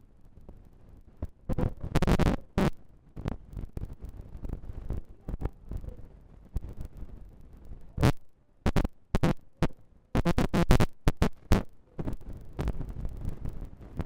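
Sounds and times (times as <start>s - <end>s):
wind and rain buffeting microphone: 0.0s - 8.6s, 11.7s - 14.0s
sharp crackles and knocks: 0.2s - 14.0s.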